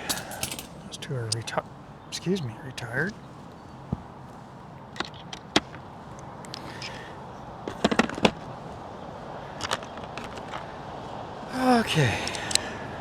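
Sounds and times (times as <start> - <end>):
hand tools clicking and clinking: 0.0 - 3.0, 7.7 - 8.5, 9.5 - 10.8.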